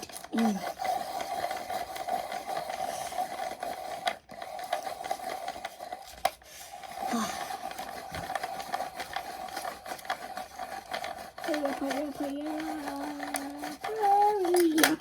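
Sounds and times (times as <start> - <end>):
pencil sharpener motor whirring: 0.0 - 15.0.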